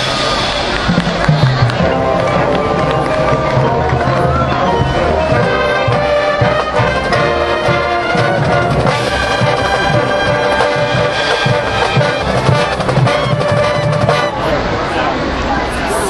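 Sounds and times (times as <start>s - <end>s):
steady drum beats: 0.0s - 14.5s
brass chords: 0.0s - 14.9s.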